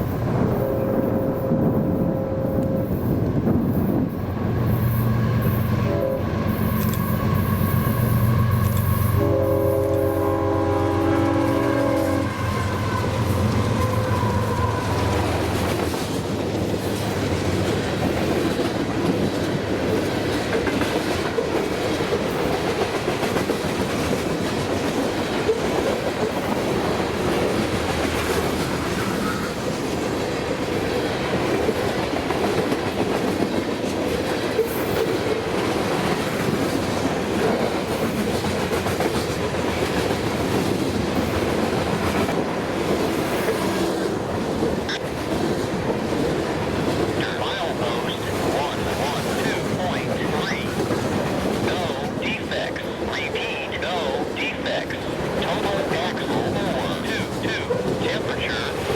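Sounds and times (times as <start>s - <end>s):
multi-note train air horn: 5.8s - 6.6s, 9.0s - 15.5s.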